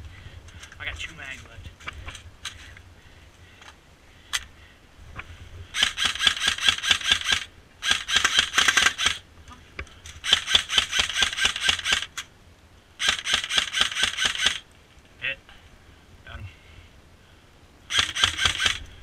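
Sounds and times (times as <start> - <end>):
airsoft gun firing full auto: 5.7 - 9.2, 10.2 - 12.2, 13.0 - 14.6, 17.9 - 18.9.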